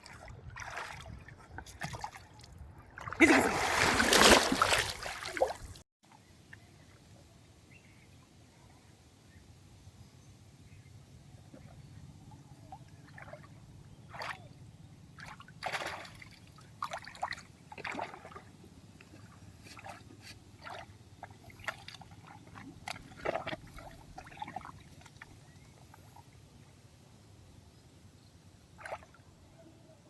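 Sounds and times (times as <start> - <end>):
water sloshing and splashing: 0.0 - 5.8, 15.2 - 26.2.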